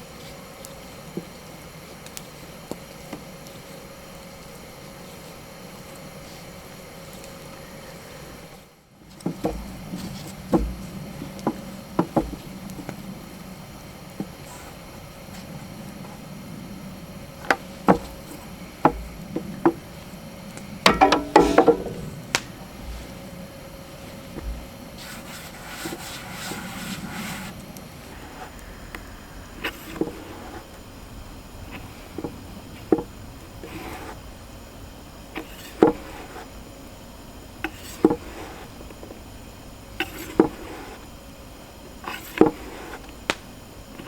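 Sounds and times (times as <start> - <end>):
knocks and clatter of hard objects: 9.2 - 12.5, 17.9 - 19.8, 20.9 - 23.1.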